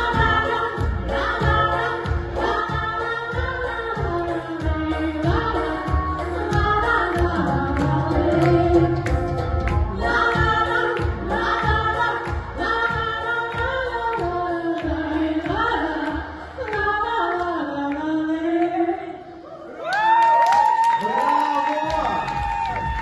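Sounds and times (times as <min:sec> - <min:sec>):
backing track with steady beat: 0:00.0 - 0:17.6
person singing melody: 0:00.0 - 0:19.2.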